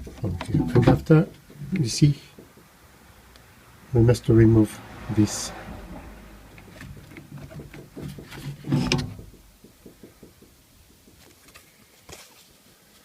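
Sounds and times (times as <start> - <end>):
clicks and rattles inside car door: 0.0 - 2.7, 6.6 - 10.6.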